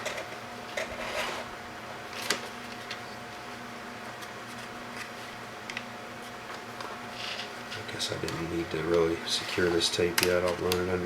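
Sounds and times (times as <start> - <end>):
steady faint hum: 0.0 - 11.0
wire and tape handling: 4.1 - 11.0.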